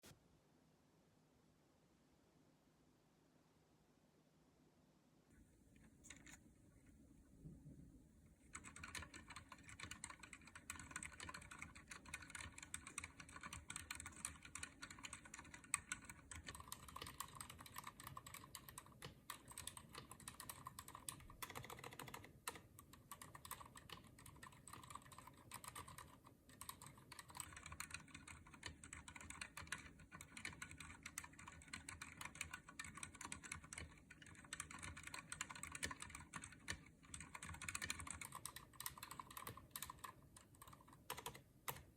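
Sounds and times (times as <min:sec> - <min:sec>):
typing on mechanical keyboard: 0:08.4 - 0:41.9.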